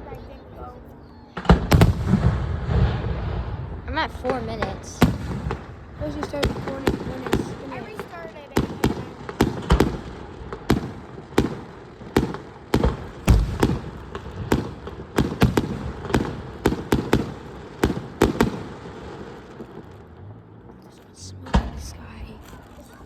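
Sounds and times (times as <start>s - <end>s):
deep firework boom: 1.4s - 7.5s, 8.6s - 20.0s
fireworks bangs: 1.4s - 23.0s.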